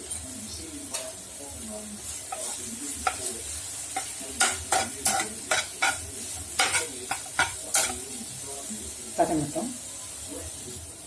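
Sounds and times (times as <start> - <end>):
oil sizzling: 0.0 - 11.0
utensil scraping a pan: 2.2 - 8.1.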